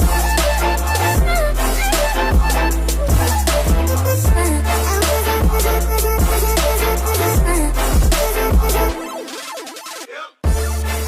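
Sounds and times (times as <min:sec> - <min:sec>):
kick drum beat: 0:00.0 - 0:00.6, 0:02.3 - 0:04.6, 0:05.4 - 0:06.6, 0:07.4 - 0:09.0, 0:10.4 - 0:10.7
electronic music with heavy bass: 0:00.0 - 0:11.0.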